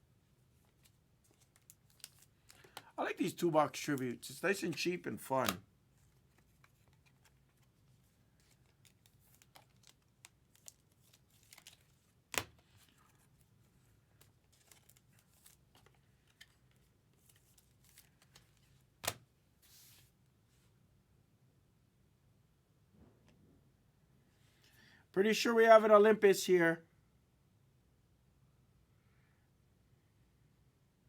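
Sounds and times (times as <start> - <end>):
trading cards rustling: 0.6 - 20.0.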